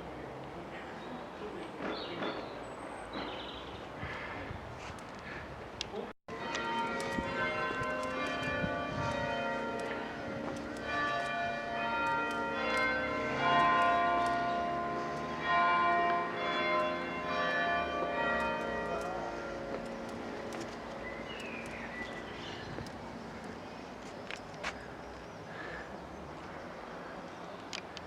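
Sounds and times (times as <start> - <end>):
church bells pealing: 6.3 - 24.1.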